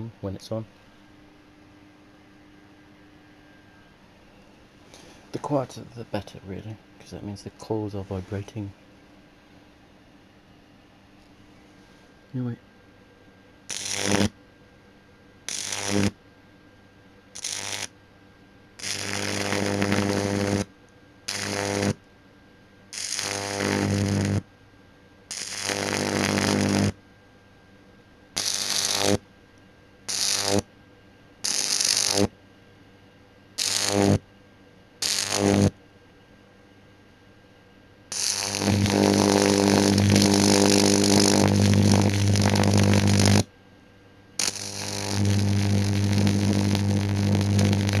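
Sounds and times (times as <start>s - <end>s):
high-voltage arc buzzing and sizzling: 13.7s - 14.4s, 15.4s - 16.2s, 17.3s - 18.0s, 18.8s - 22.0s, 22.9s - 24.5s, 25.3s - 27.0s, 28.4s - 29.2s, 30.1s - 30.7s, 31.4s - 32.4s, 33.6s - 34.2s, 35.0s - 35.8s, 38.1s - 43.5s, 44.4s - 48.0s.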